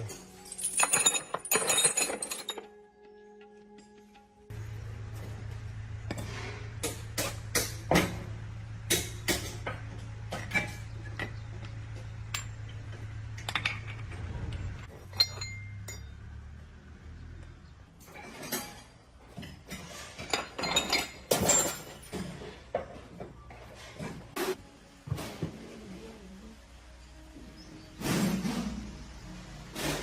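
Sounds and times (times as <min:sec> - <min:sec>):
metal tools clinking and knocking: 0:00.0 - 0:02.8, 0:08.9 - 0:14.2, 0:14.8 - 0:16.3, 0:18.0 - 0:24.1.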